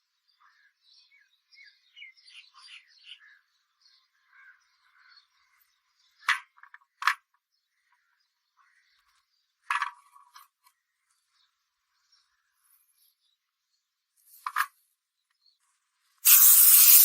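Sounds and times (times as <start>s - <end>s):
short rattle: 16.2s - 17.0s.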